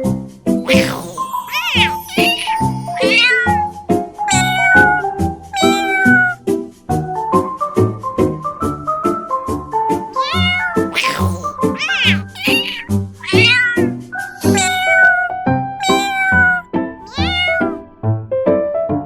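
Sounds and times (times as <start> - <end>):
cat meowing: 0.7 - 3.7, 4.3 - 6.4, 10.2 - 17.8.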